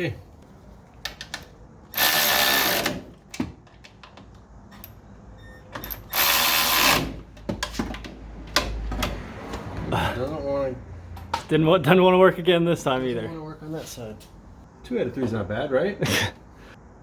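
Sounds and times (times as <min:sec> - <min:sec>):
impact wrench bursts: 0:01.9 - 0:03.2, 0:05.8 - 0:07.2.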